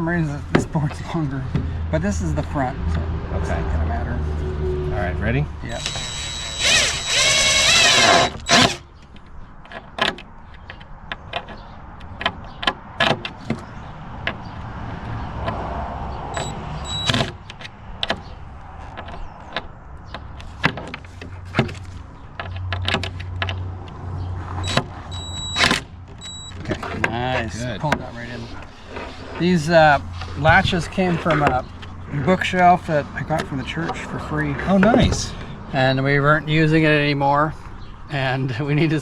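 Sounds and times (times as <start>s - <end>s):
power drill driving screw: 5.7s - 8.9s, 16.4s - 17.3s, 24.6s - 26.5s
low motor hum: 5.8s - 8.8s
wood and tools knocking: 5.8s - 14.4s.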